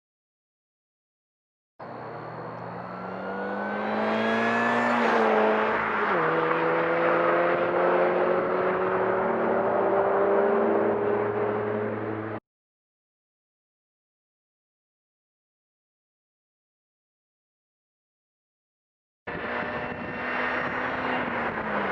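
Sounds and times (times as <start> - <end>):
car accelerating past: 1.8 - 12.4
supercharger whine: 1.8 - 12.4, 19.3 - 21.9.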